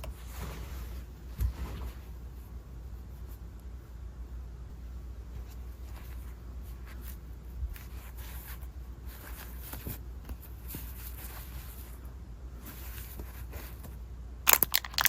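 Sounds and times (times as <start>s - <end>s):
packaging rustling: 14.5s - 15.0s.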